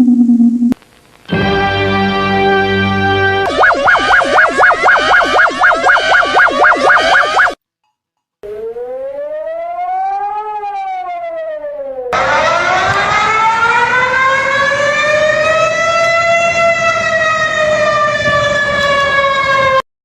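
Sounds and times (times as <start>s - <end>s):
warning siren wailing: 3.4s - 7.6s, 8.4s - 19.8s.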